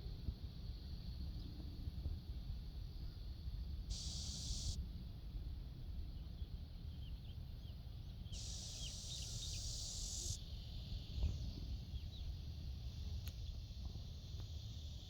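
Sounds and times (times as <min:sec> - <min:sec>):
high insect buzz: 0:03.9 - 0:04.8, 0:08.4 - 0:10.4
small quick chirps: 0:03.9 - 0:04.8, 0:08.4 - 0:10.4.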